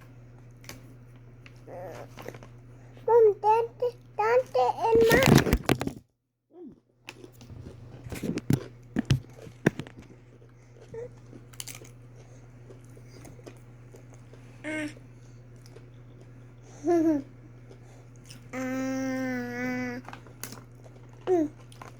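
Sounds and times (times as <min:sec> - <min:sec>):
snack crunching and crinkling: 0:07.1 - 0:14.6, 0:15.3 - 0:16.6, 0:17.5 - 0:18.6, 0:20.0 - 0:21.9
steady low hum: 0:07.1 - 0:21.9.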